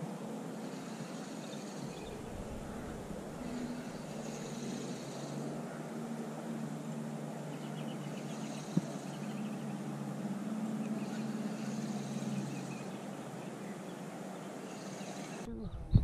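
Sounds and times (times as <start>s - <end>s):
engine drone: 0.0s - 16.0s
outdoor background noise: 0.0s - 16.0s.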